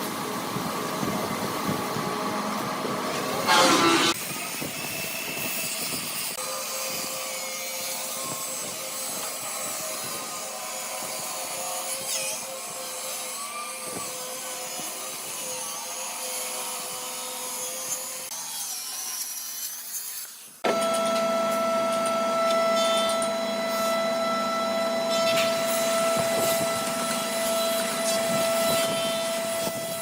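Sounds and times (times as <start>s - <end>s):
machine scraping wood: 3.1s - 12.5s, 22.0s - 30.0s.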